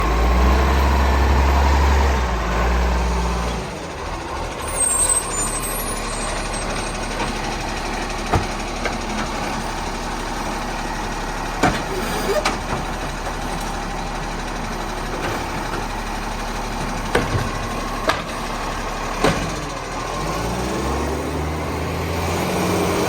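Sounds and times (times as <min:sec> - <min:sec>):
garbage truck engine drone: 0:00.0 - 0:23.0
high squeal: 0:04.6 - 0:07.2.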